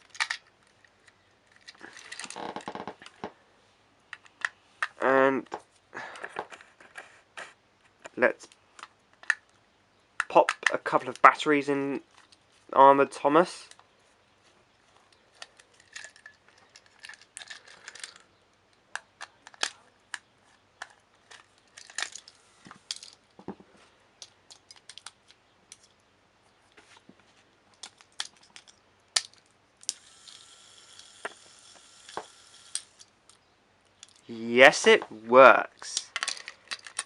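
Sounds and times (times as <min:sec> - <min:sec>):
toy electric motor whirring: 0:29.8 - 0:33.0.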